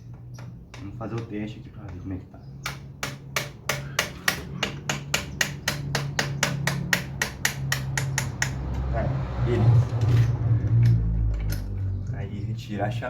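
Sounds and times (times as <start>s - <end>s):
metal-on-metal tapping: 0.0s - 8.9s.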